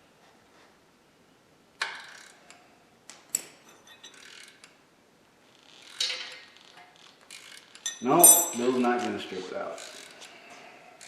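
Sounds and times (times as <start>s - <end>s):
ratchet clicking: 1.8s - 2.5s, 4.0s - 4.8s, 5.5s - 8.6s, 9.8s - 10.2s.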